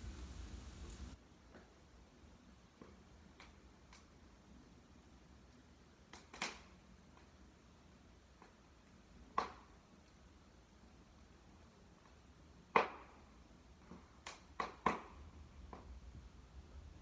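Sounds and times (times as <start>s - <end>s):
sharp fire pops: 0.0s - 1.2s
wood fire crackling: 0.0s - 1.2s.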